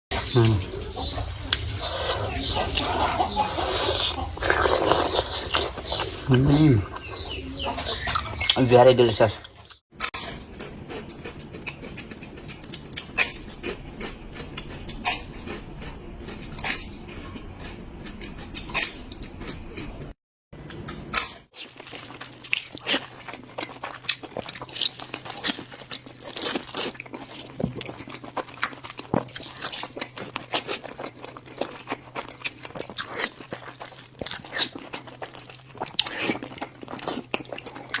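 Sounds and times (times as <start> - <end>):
person chewing crunchy food: 0.1 - 38.0.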